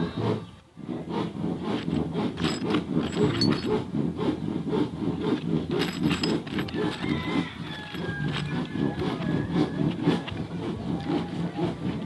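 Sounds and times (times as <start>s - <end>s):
hand tool rasping on metal: 0.0s - 12.0s.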